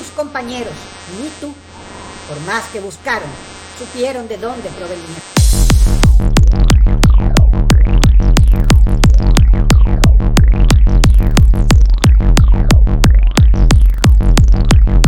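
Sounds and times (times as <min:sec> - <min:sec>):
synth sweeps: 0:00.0 - 0:04.0
electronic trance music: 0:00.0 - 0:15.0.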